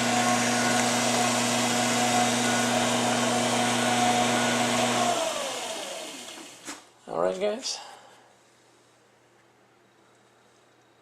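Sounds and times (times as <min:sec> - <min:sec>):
electric motor humming: 0:00.0 - 0:06.6.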